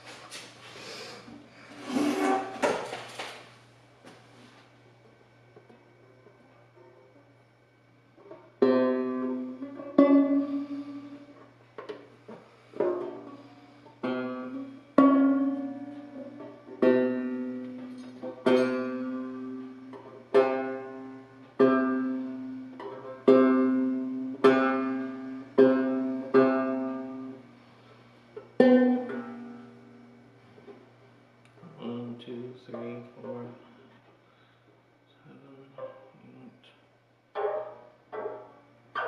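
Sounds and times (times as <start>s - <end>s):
banjo string plucked: 8.2s - 12.1s, 12.8s - 27.5s, 28.4s - 30.2s, 37.3s - 39.0s.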